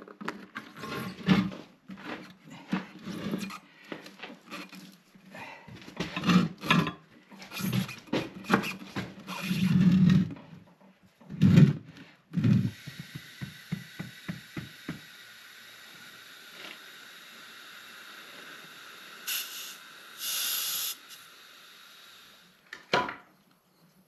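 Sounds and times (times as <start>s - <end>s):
air hissing: 7.5s - 9.8s, 12.5s - 22.6s
bursts of air: 12.8s - 22.5s.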